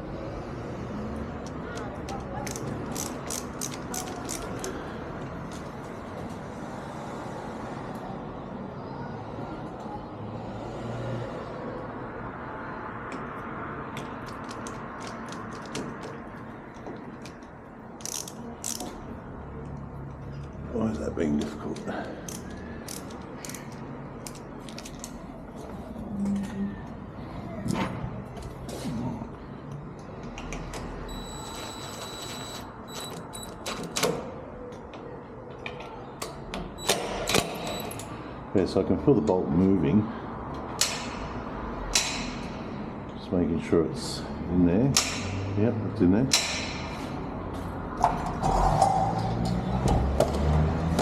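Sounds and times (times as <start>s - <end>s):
traffic rumble: 0.0s - 51.0s
metal bolt clicks: 41.9s - 42.5s.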